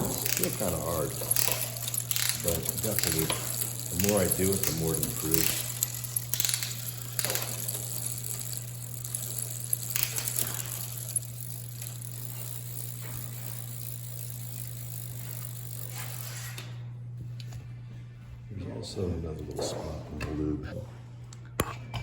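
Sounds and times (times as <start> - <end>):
bicycle drivetrain rattling: 0.0 - 16.8
steady low hum: 0.0 - 22.0.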